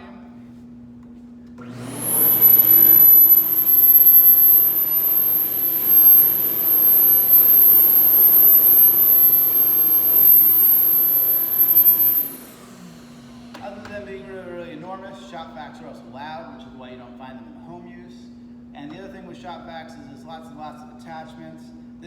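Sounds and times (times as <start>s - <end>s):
shop vacuum running: 0.5s - 17.3s.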